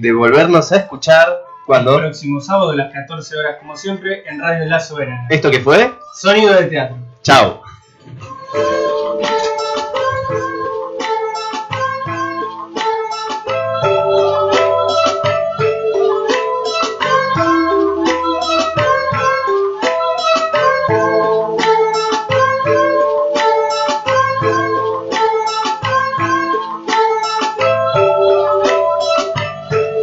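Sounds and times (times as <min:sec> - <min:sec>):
plucked guitar tune: 0:08.6 - 0:30.0
bass line: 0:13.6 - 0:19.5, 0:20.6 - 0:21.7.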